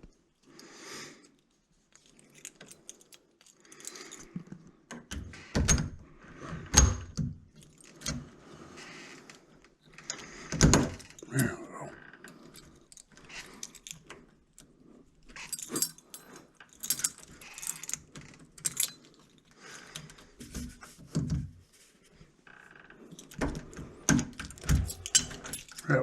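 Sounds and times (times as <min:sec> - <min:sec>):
metal keys jangling: 0:01.9 - 0:04.3, 0:12.3 - 0:14.1, 0:15.4 - 0:19.5, 0:23.1 - 0:23.4, 0:24.3 - 0:25.9
metal clicks and rattles of lock: 0:01.9 - 0:06.0, 0:12.2 - 0:20.2, 0:23.1 - 0:25.9.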